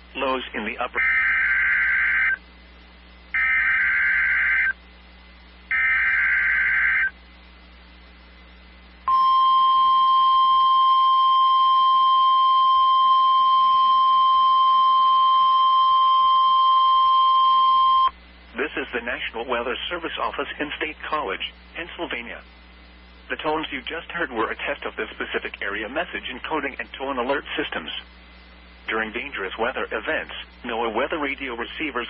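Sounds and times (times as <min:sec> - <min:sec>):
digital data bursts: 0:00.9 - 0:02.4, 0:03.4 - 0:04.8, 0:05.7 - 0:07.1
steady warning alarm tone: 0:01.0 - 0:02.4, 0:03.3 - 0:04.8, 0:05.7 - 0:07.2, 0:09.1 - 0:18.2.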